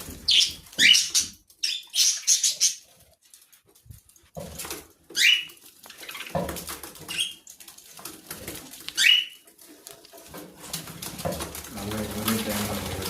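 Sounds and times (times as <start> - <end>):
parrot chirping: 0.2 - 3.0, 5.2 - 7.5, 8.9 - 9.4
soft clicking and rustling: 2.9 - 13.0.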